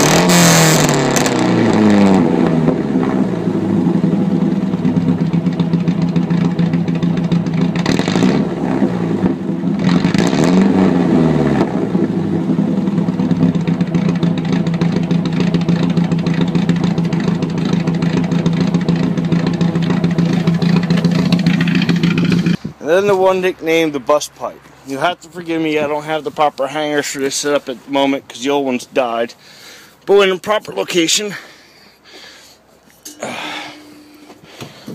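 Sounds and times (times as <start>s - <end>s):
car engine revving and idling: 0.0s - 22.8s.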